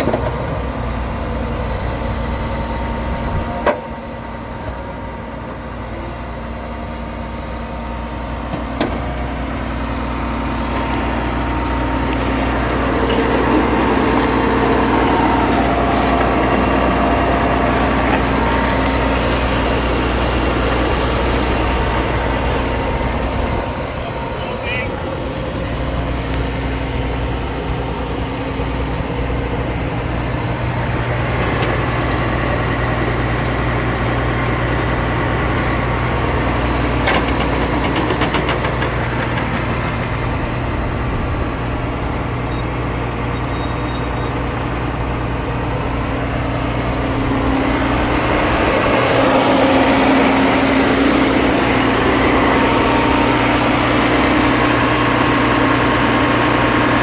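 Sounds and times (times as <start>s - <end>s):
diesel engine idling: 0.0s - 57.0s.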